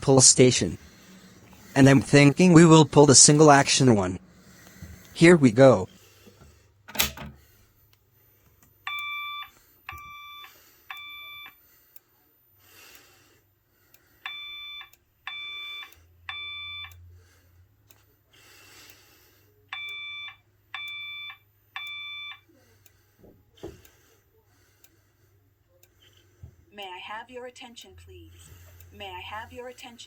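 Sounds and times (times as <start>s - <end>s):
pull station click: 6.3s - 7.4s
evacuation alarm beeps: 8.8s - 11.6s, 14.2s - 17.1s, 19.7s - 22.5s.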